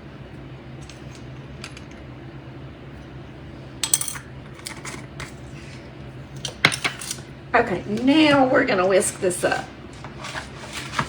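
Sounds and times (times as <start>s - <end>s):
measuring spoons clinking: 3.8s - 4.3s.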